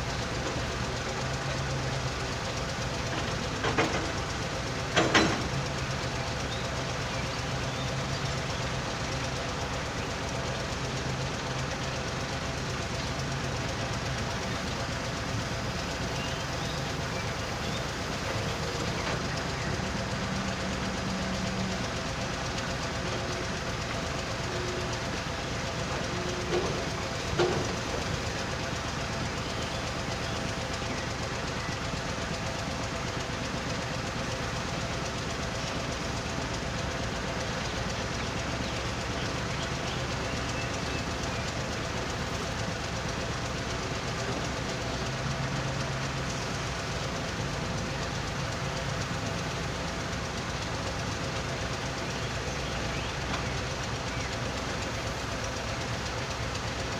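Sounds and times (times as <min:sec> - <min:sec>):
excavator engine: 0:00.0 - 0:56.9
heavy diesel machinery running: 0:00.0 - 0:56.9
screening machine running: 0:12.2 - 0:33.8.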